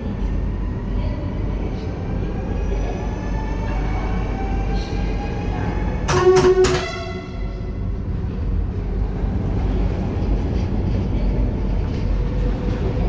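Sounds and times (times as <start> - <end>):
electric train rumbling: 0.0 - 13.0
train horn blast: 6.1 - 7.8.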